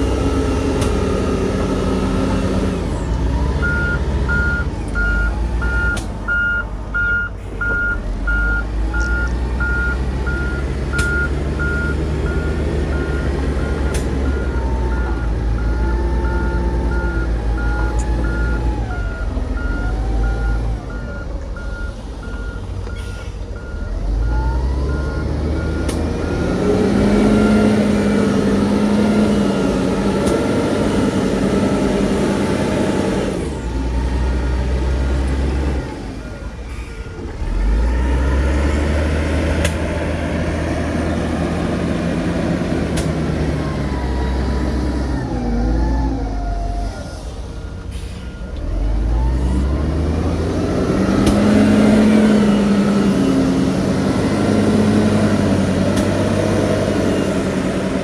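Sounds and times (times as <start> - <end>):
reversing alarm beeping: 0.0 - 35.0
heavy diesel engine running: 0.0 - 58.0.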